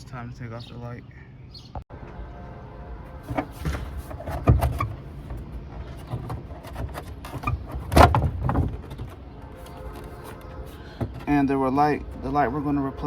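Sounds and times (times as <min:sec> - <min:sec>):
plastic clatter: 0:03.3 - 0:11.3.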